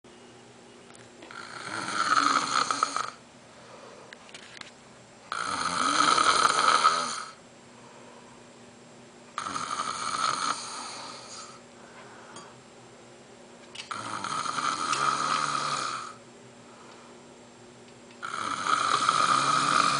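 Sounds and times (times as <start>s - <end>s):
man snoring: 1.3s - 3.2s, 5.3s - 7.4s, 9.4s - 11.6s, 13.9s - 16.2s, 18.2s - 19.9s.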